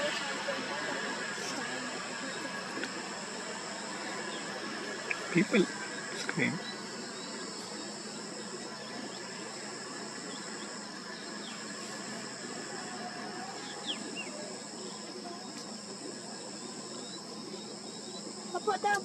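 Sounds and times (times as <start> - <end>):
insects chorus: 0.0 - 19.0
faint bird chirps: 3.6 - 19.0.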